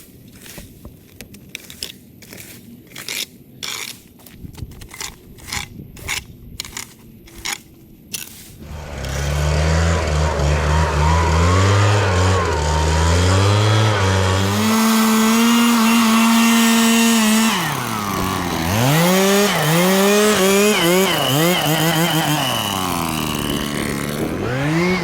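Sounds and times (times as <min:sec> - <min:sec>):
chainsaw revving: 0:08.6 - 0:25.0.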